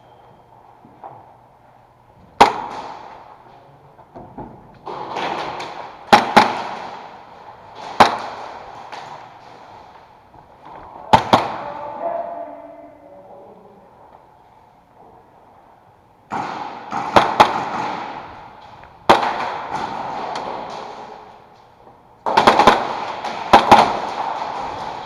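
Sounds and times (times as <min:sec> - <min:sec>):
echoing airsoft shots: 0:02.3 - 0:03.5, 0:04.4 - 0:12.2, 0:16.3 - 0:21.5, 0:22.2 - 0:25.0.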